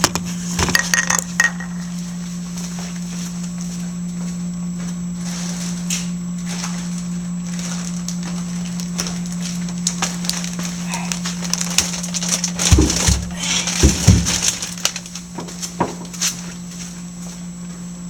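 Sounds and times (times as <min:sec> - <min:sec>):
freezer humming: 0:00.0 - 0:18.0
frozen packages rustling: 0:05.2 - 0:16.9.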